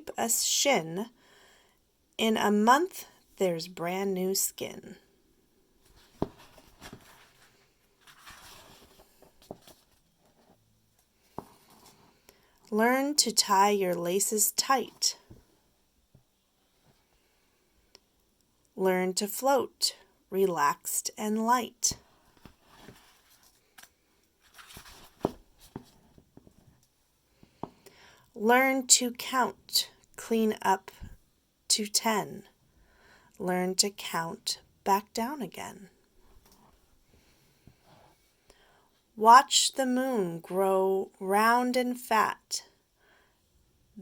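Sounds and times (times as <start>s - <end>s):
paper pages rustling: 5.8s - 10.6s, 22.2s - 26.7s.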